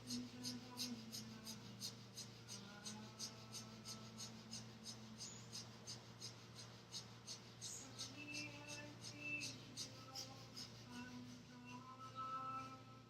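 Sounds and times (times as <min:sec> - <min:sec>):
rapid rhythmic nose breathing: 0:00.0 - 0:12.8.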